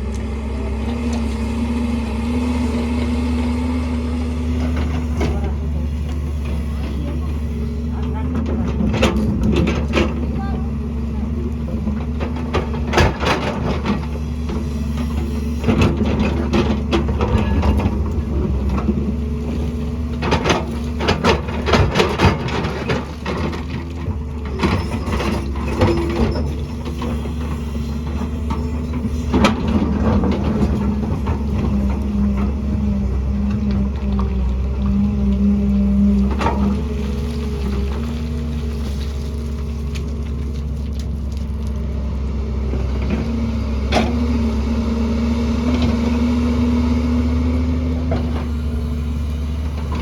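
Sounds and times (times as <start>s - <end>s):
excavator diesel engine running: 0.0s - 50.0s
rock and steel bucket clattering: 15.7s - 26.9s.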